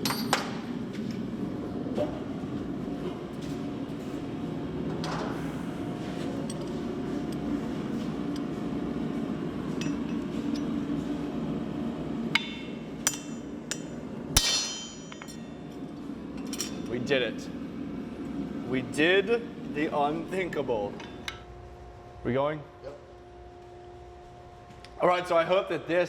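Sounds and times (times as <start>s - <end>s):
hammer striking hot steel on anvil: 12.3s - 15.5s.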